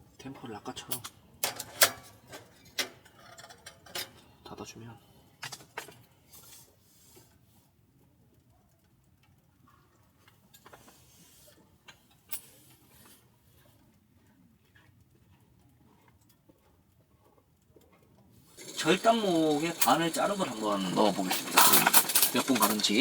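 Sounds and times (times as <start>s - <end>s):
wood stove fire crackling: 0.0s - 14.1s, 15.0s - 23.0s
low hiss: 18.5s - 23.0s.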